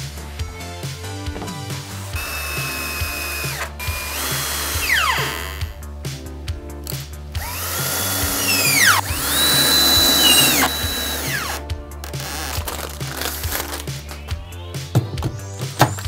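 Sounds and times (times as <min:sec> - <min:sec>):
background music with beat: 0:00.0 - 0:16.0
power drill whine: 0:02.2 - 0:05.8, 0:07.4 - 0:11.6.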